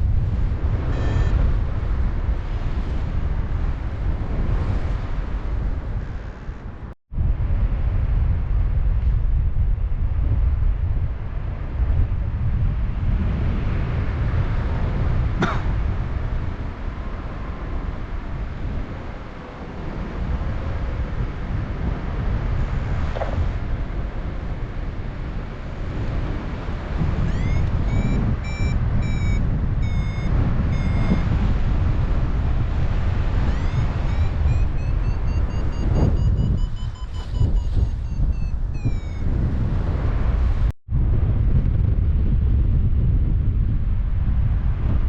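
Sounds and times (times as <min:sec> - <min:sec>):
wind rushing over microphone: 0:00.0 - 0:45.0
variometer beeping: 0:00.7 - 0:01.6, 0:27.2 - 0:31.5, 0:33.4 - 0:39.5.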